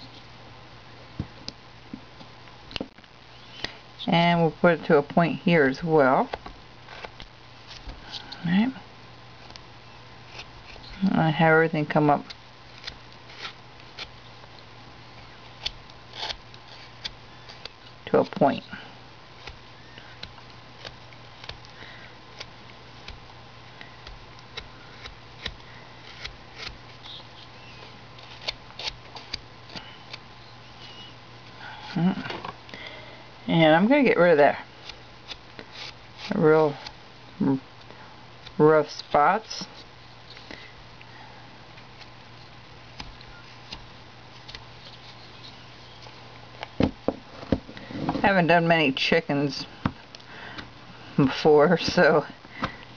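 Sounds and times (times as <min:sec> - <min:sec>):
steady low hum: 0:00.0 - 0:52.9
knife cutting wood: 0:15.6 - 0:17.8, 0:24.0 - 0:27.5, 0:34.8 - 0:37.0.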